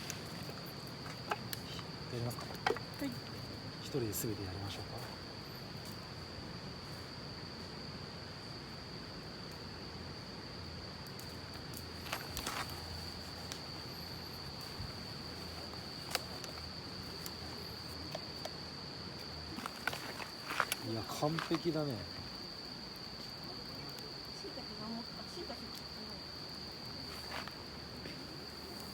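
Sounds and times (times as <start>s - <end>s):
crickets trilling: 0.0s - 28.9s.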